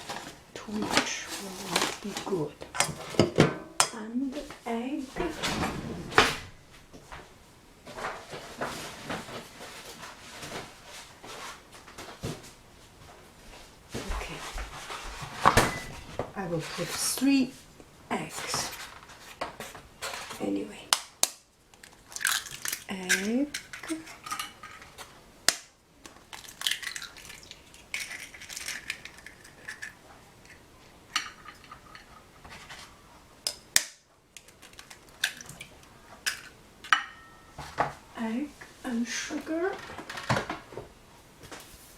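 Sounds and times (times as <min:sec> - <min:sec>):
kitchenware clinking: 0:02.8 - 0:04.0, 0:22.2 - 0:25.1, 0:26.6 - 0:32.8, 0:34.6 - 0:37.9
eggs cracking on pan: 0:20.9 - 0:32.1, 0:33.5 - 0:37.4.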